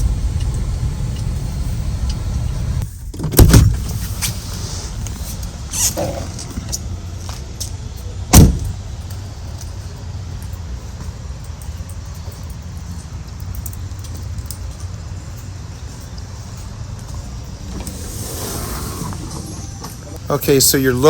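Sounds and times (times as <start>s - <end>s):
vehicle driving rumble: 0.0s - 21.0s
loud sharp thump: 8.3s - 8.8s.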